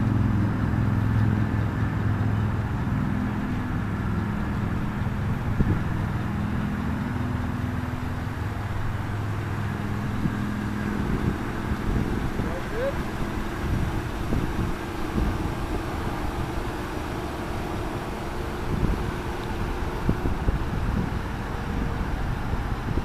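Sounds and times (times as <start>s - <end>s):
pickup engine humming: 0.0s - 23.0s.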